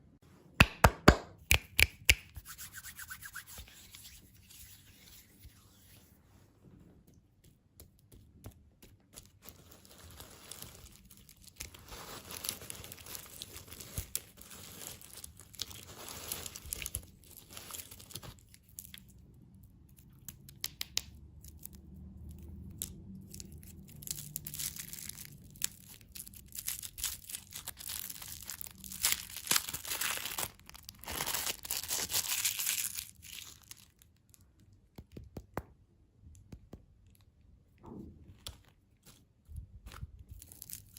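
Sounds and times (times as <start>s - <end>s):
plastic wrappers crinkling: 9.1s - 19.1s, 23.4s - 34.4s, 38.4s - 40.9s.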